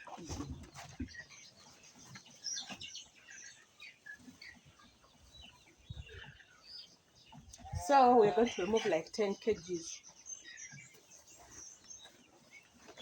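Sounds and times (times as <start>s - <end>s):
chickens clucking: 0.0s - 13.0s.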